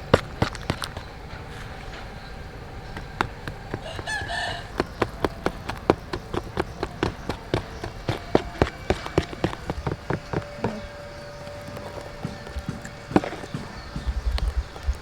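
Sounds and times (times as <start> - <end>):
sharp knocks: 2.9 - 14.2
rooster crowing: 3.4 - 13.8.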